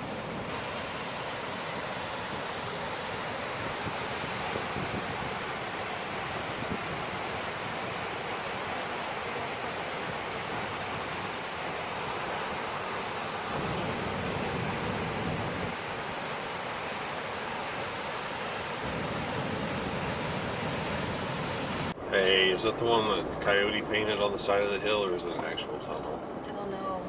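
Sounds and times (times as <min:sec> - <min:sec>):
road and wind noise in vehicle cabin: 0:25.1 - 0:27.0.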